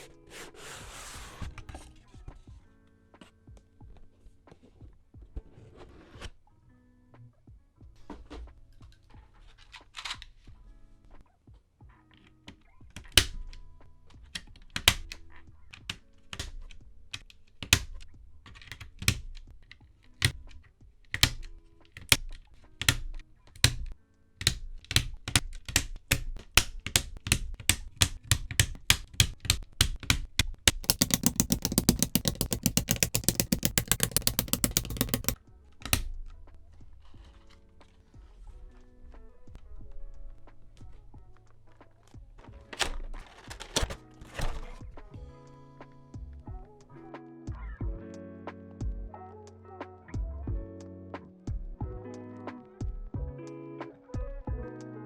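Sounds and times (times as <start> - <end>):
typing on mechanical keyboard: 24.4 - 36.1.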